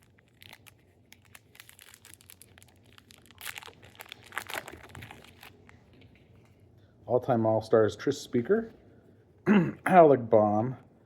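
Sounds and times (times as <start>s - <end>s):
wrapper tearing and crinkling: 0.0s - 5.8s.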